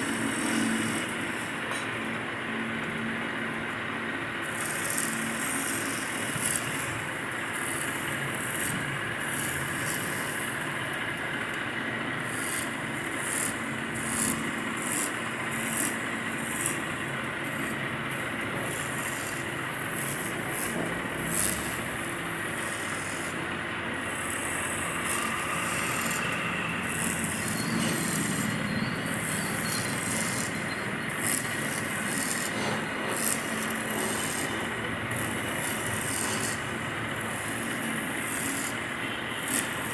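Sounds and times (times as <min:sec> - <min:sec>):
wood lathe humming: 0:00.0 - 0:01.7, 0:03.7 - 0:18.0, 0:18.6 - 0:39.9
tool scraping spinning wood: 0:18.6 - 0:38.8.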